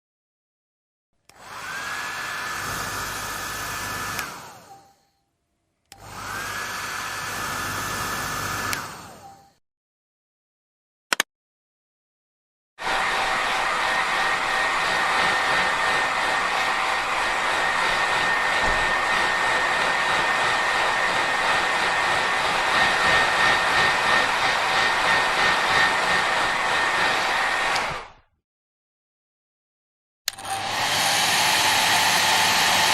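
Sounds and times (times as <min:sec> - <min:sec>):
hair dryer running: 0:01.3 - 0:04.9, 0:05.9 - 0:09.5, 0:12.8 - 0:28.2, 0:30.3 - 0:32.9
hair dryer switch click: 0:04.1 - 0:04.4, 0:08.6 - 0:08.9.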